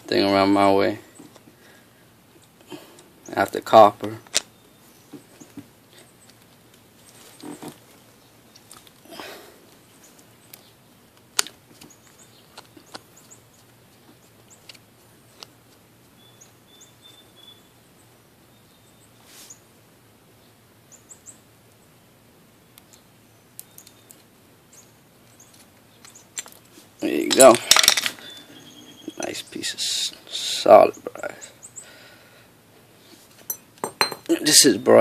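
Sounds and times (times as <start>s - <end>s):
rustling: 4.3s - 9.1s
faint bird chirps: 16.1s - 19.7s, 28.2s - 29.7s
metal parts clinking: 27.2s - 28.2s.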